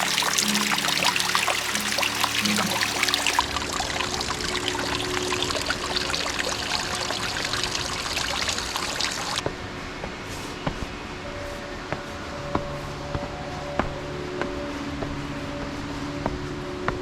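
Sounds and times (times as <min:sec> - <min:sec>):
running water splashing: 0:00.0 - 0:09.4.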